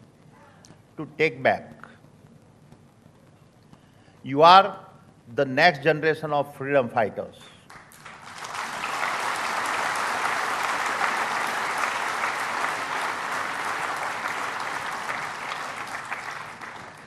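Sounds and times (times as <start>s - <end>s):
audience applauding: 7.7s - 17.0s.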